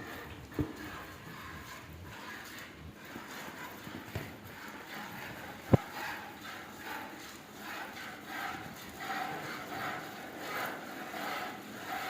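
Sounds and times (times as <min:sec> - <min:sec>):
milk squirting into a pail: 0:00.0 - 0:10.5.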